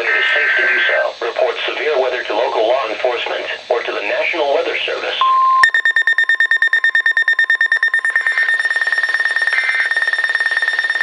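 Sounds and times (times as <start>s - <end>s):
rapid electronic beeping: 5.5s - 11.0s.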